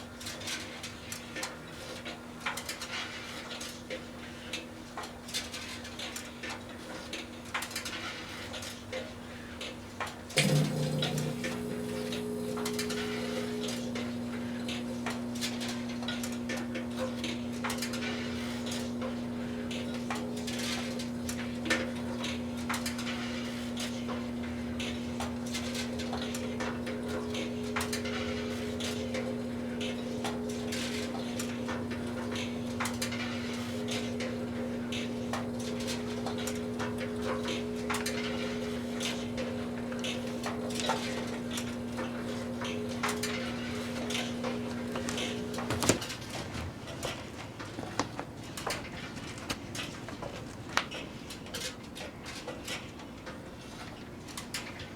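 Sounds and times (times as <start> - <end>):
microwave ovens humming: 10.0 - 50.0.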